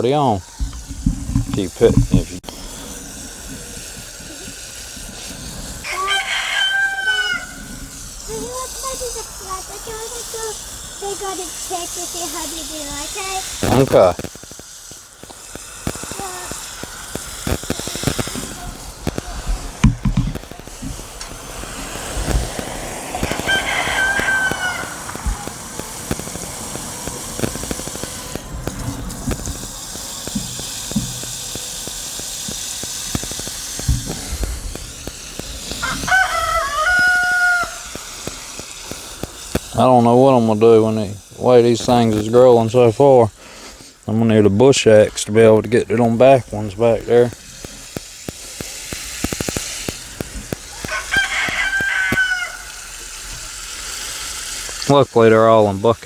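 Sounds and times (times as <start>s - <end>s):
microphone interference clicks: 0.4s - 5.9s, 7.6s - 43.0s, 45.0s - 54.9s
rooster crowing: 5.8s - 7.8s, 23.2s - 25.6s, 35.7s - 38.0s, 50.7s - 53.0s.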